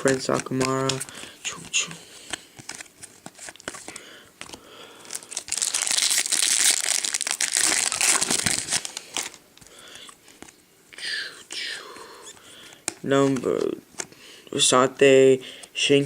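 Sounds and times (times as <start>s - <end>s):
card pack wrapper crinkling: 0.0s - 10.6s.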